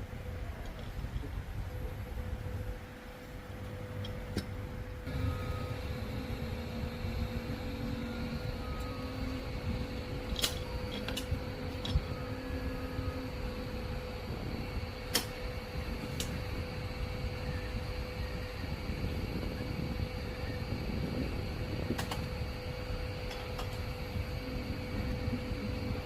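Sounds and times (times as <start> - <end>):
low rumbling background: 0.0 - 26.0
steady hum: 0.0 - 26.0
sharp clicks: 15.1 - 15.4.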